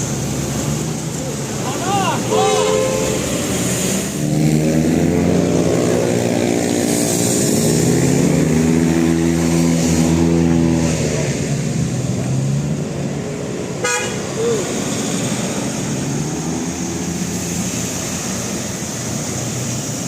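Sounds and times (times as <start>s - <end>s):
vehicle engine passing by: 0.0s - 20.0s.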